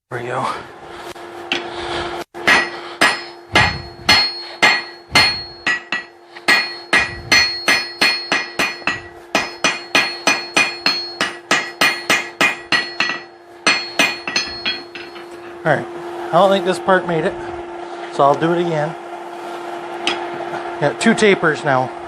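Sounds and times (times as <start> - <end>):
hammer ringing on anvil: 2.4 - 15.6, 20.0 - 20.3.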